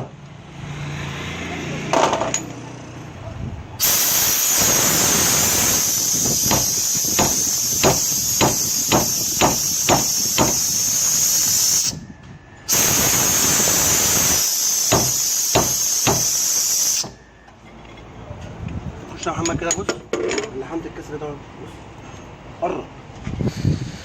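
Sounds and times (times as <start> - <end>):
pressurised gas hissing: 3.8 - 12.1, 12.7 - 17.2, 23.4 - 24.0.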